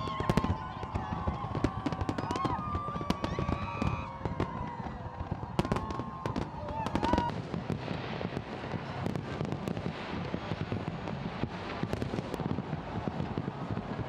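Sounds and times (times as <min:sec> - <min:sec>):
fireworks crackling: 0:00.0 - 0:14.0.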